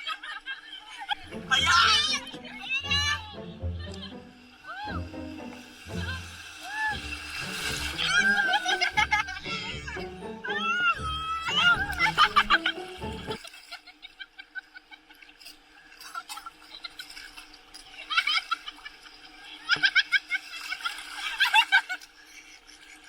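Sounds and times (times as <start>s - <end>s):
people laughing and giggling: 0.0s - 15.4s, 17.9s - 23.0s
background music: 1.2s - 13.6s.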